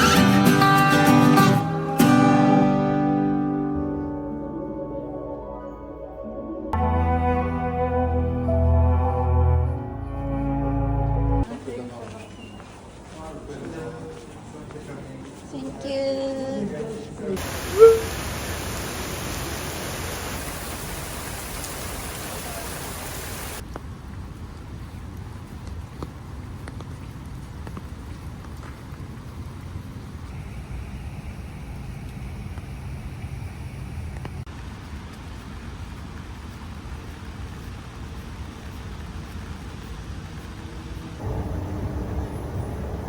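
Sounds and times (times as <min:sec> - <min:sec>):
rushing water noise: 0:17.4 - 0:23.6
low rumble of traffic: 0:17.4 - 0:43.0.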